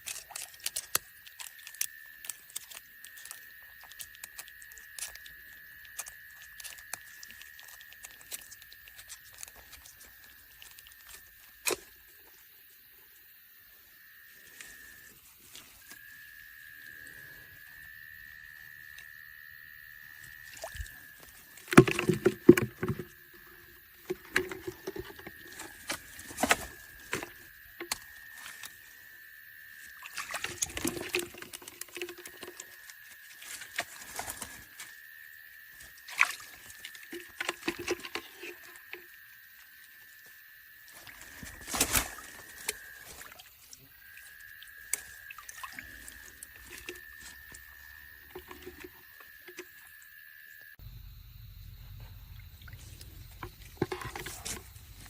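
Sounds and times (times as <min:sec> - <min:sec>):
water splashing and sloshing: 0:00.0 - 0:12.8, 0:14.3 - 0:50.8, 0:51.7 - 0:55.0.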